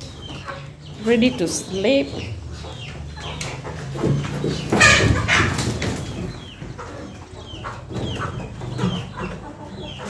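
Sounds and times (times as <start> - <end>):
chickens peeping: 0.0 - 10.0
chicken squawk: 4.6 - 10.0.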